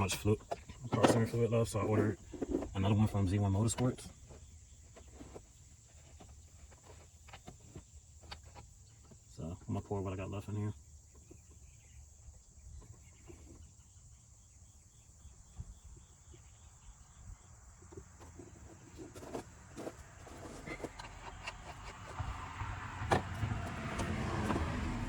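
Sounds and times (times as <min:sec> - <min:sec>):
crickets chirring: 0:00.0 - 0:25.0
small knocks: 0:17.8 - 0:25.0.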